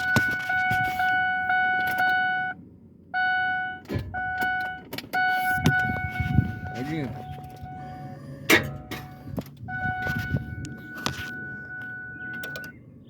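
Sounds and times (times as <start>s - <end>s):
electronic dash chime: 0.0s - 2.6s, 3.2s - 12.8s
ignition key clicks: 1.6s - 2.3s, 3.8s - 12.8s.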